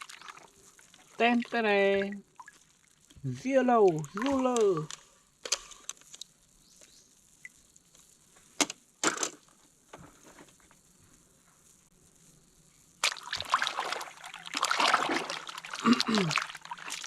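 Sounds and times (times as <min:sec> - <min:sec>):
water splashing and sloshing: 0:00.0 - 0:03.1, 0:03.8 - 0:05.0, 0:13.0 - 0:17.0.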